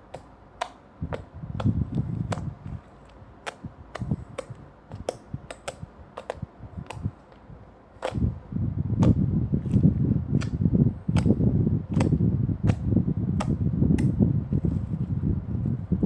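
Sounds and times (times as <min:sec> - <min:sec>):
slime squishing: 0:00.0 - 0:15.1
slime popping clicks: 0:03.4 - 0:07.1.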